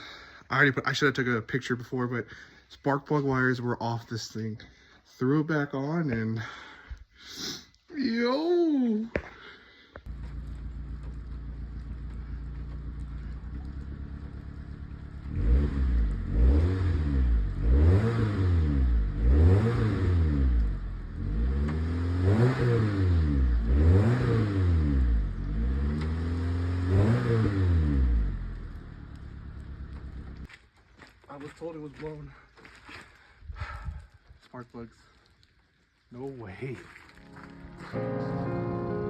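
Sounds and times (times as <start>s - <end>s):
car engine idling and revving: 10.0s - 30.5s.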